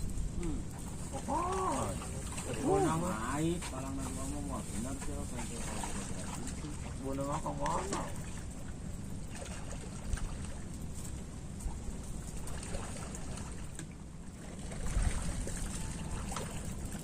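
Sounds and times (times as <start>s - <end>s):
wind rumbling on microphone: 0.0s - 17.0s.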